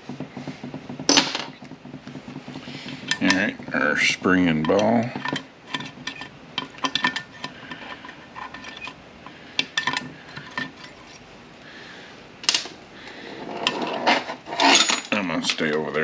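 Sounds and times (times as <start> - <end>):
steel parts clicking and clinking: 2.8 - 3.8, 4.5 - 11.3, 13.6 - 16.0
metal parts rattling: 2.8 - 9.0, 9.6 - 11.2, 13.4 - 15.8.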